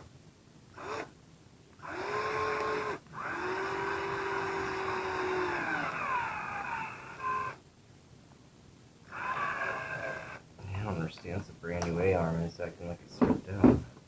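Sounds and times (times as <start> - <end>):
electric screwdriver motor whining: 0.8 - 1.1, 1.8 - 7.6, 9.1 - 10.4.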